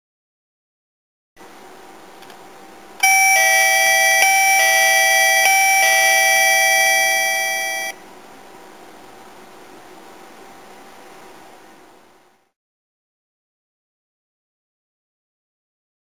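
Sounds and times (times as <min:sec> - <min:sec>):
electronic chime tune: 0:03.0 - 0:08.0.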